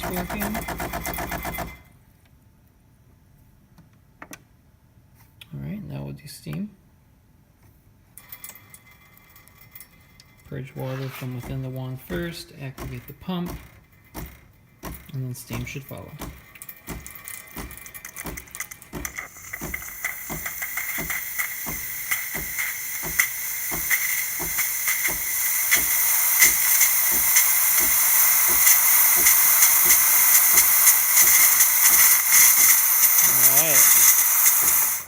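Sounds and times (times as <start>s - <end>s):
espresso machine pump pulsing: 0.0s - 1.8s, 10.8s - 35.0s
steam hissing: 0.0s - 1.8s, 10.6s - 35.0s.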